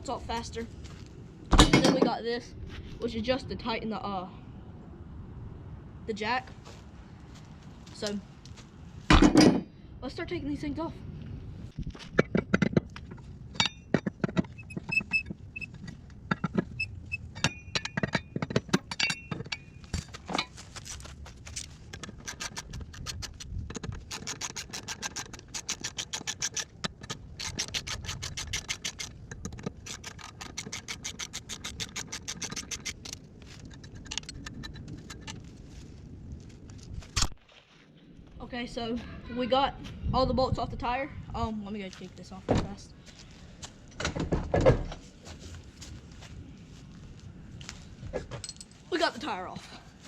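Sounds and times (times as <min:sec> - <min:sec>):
hand ratchet clicking: 0:21.5 - 0:33.2.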